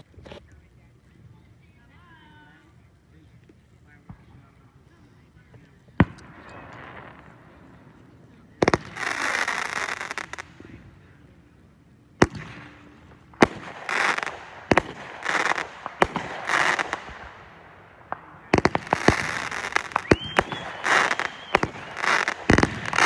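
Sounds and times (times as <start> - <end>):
fireworks hissing and crackling: 2.2 - 23.0
firework bangs: 5.9 - 11.2, 12.2 - 23.0
firework whistle: 18.4 - 23.0.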